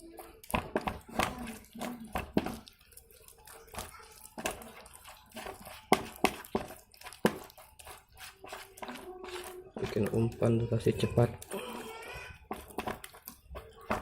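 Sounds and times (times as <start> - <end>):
bait crinkling and squishing by hand: 0.0 - 14.0.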